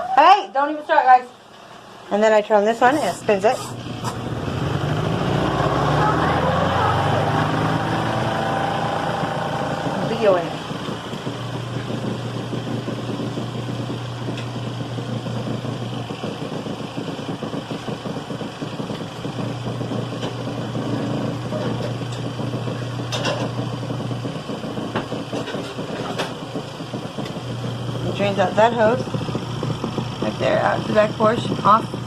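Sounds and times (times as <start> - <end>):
motor hum: 0.0 - 32.0
washing machine churning: 0.0 - 32.0.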